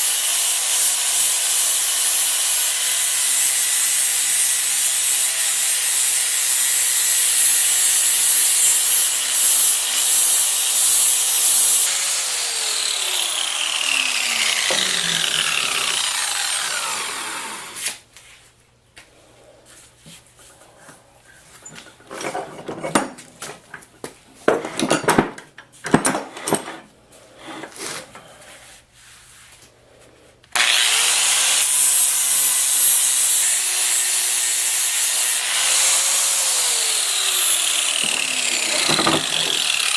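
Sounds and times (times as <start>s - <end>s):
power tool running against metal: 0.0s - 17.8s, 30.6s - 39.9s.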